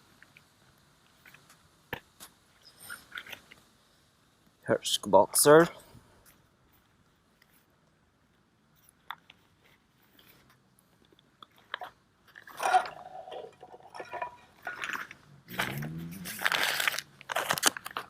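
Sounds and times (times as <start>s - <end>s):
jars clicking: 11.7s - 15.8s
food packets rustling: 13.6s - 18.0s.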